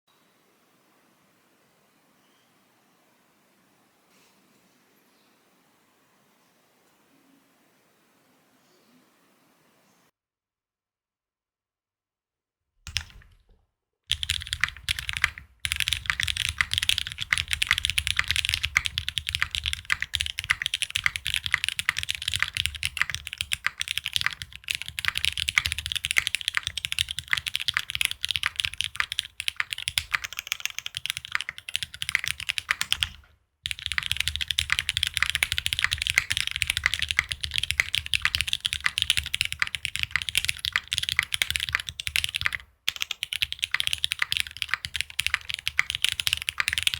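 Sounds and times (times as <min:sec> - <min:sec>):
fast typing on mechanical keyboard: 0:12.9 - 0:13.3, 0:14.1 - 0:46.9.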